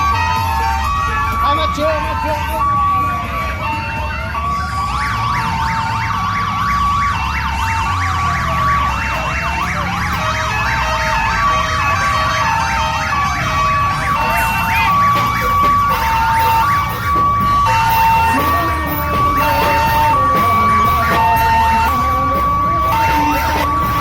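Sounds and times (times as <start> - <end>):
siren wailing: 0.0 - 24.0
sirens warbling: 0.0 - 24.0
two-note horn blasts: 13.5 - 24.0.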